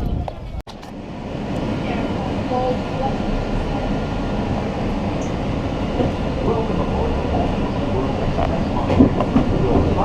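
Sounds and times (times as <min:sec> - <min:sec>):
train wheels rumbling on rails: 0:00.0 - 0:10.0.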